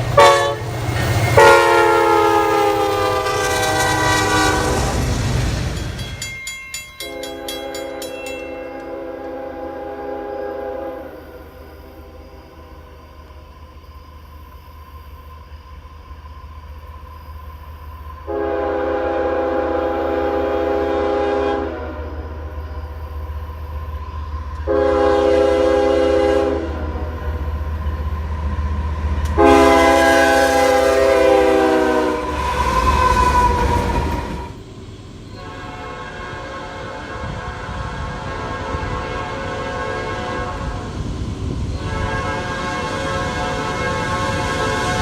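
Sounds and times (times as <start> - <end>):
train rumble: 0.0 - 45.0
train rushing past: 0.0 - 45.0
locomotive air horn blasts: 0.2 - 0.7, 1.4 - 5.0, 7.0 - 12.3, 18.3 - 22.3, 24.6 - 27.4, 29.3 - 34.6, 35.4 - 40.9, 41.8 - 45.0.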